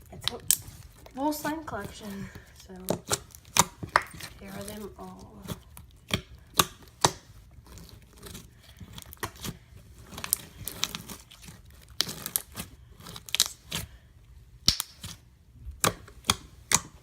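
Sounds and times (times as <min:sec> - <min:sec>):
slime squished by hand popping: 0:06.0 - 0:07.3, 0:14.6 - 0:17.0.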